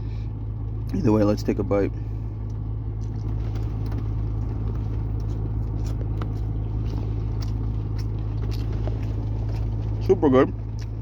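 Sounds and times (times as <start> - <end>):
steady low hum: 0.0 - 11.0
person chewing food: 4.6 - 9.9.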